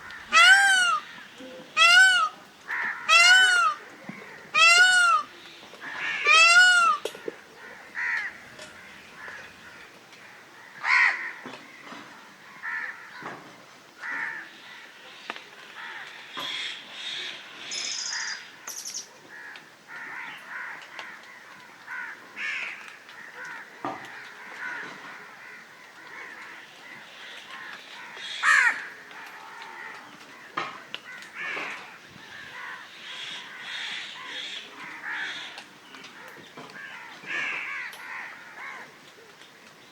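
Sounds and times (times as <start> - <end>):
crows cawing: 5.9 - 13.3, 14.0 - 14.9, 15.8 - 16.8, 19.3 - 39.0.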